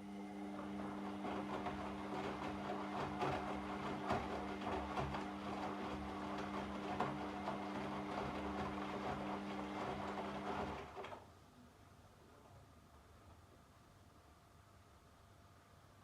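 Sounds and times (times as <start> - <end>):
washing machine motor hum: 0.0 - 11.3.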